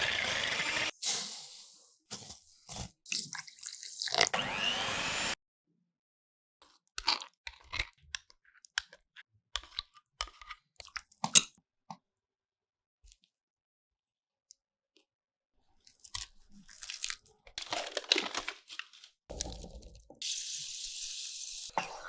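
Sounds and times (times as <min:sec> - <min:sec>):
food crunching and clicks: 0:06.7 - 0:11.6, 0:15.9 - 0:18.5.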